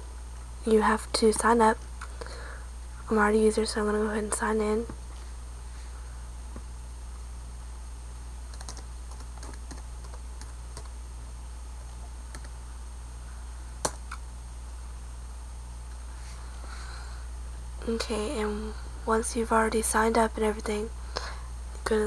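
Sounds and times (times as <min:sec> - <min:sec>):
low electrical hum: 0:00.0 - 0:22.0
computer keyboard typing: 0:08.5 - 0:10.9, 0:12.3 - 0:12.6.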